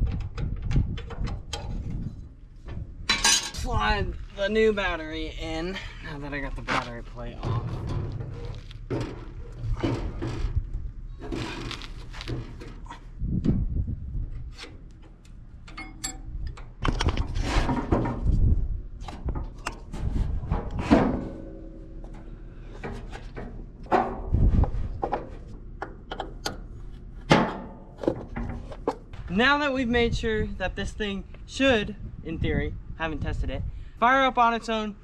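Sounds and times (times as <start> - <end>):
battery parts clunking and scraping: 0.0 - 3.7, 6.6 - 13.1, 14.3 - 18.4, 19.0 - 29.3.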